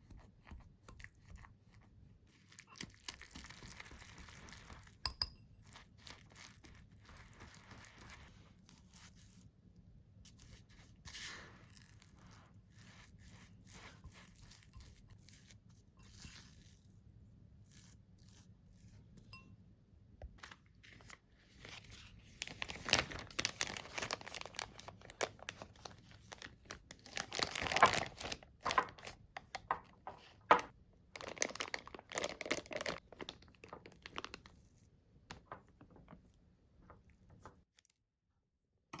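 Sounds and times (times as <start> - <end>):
wrapping material crinkling: 20.9 - 34.8.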